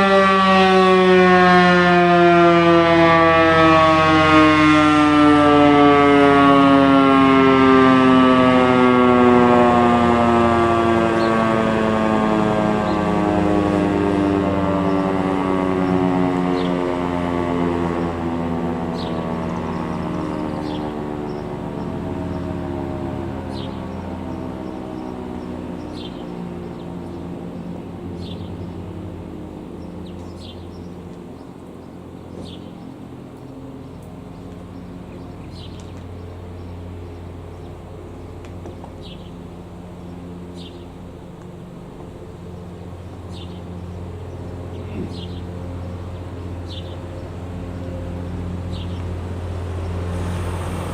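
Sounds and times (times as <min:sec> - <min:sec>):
warning siren wailing: 0:00.0 - 0:50.9
bird chirping: 0:18.9 - 0:28.9, 0:29.6 - 0:39.4, 0:40.0 - 0:41.0, 0:43.0 - 0:49.1.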